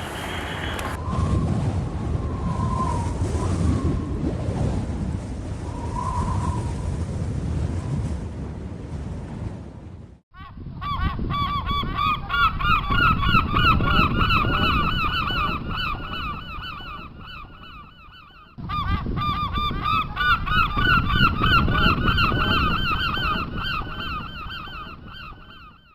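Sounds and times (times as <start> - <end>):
gulls calling: 0.0 - 1.0, 10.4 - 25.9
wind and sea rumble: 0.0 - 25.9.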